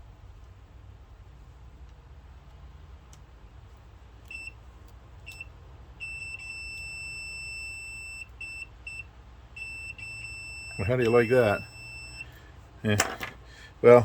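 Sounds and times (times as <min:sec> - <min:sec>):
multimeter continuity beeps: 0:04.2 - 0:12.4.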